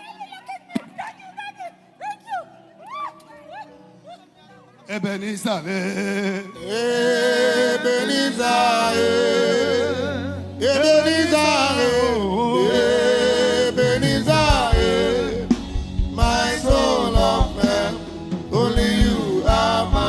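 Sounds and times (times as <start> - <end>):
instrumental accompaniment: 7.4 - 20.0
drum beat: 13.8 - 20.0.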